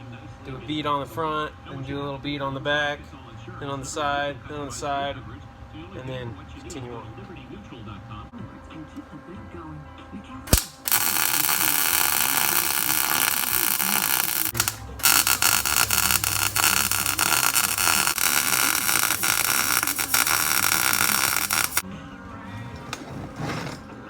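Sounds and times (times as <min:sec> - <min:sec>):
sharp click: 0:10.5 - 0:11.0
arc welding crackling hiss: 0:10.5 - 0:21.8.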